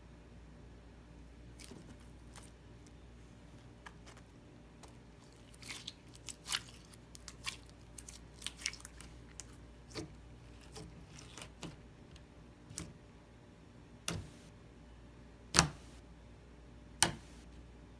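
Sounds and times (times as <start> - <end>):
slime squishing by hand: 1.5 - 13.0.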